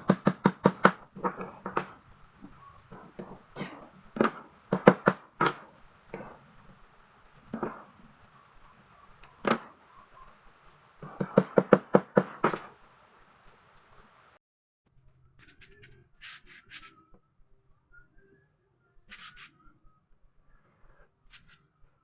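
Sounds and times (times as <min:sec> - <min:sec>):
hammer blows on wood: 0:00.0 - 0:10.4, 0:11.0 - 0:13.1.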